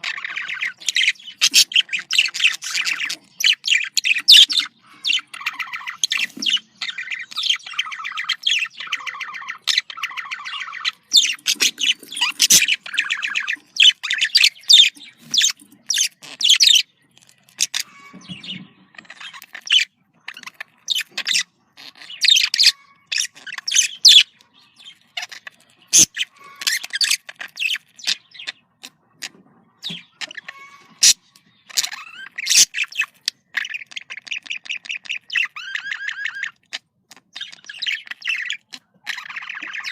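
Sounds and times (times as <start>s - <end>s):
budgerigar chattering and warbling: 0.0s - 39.9s.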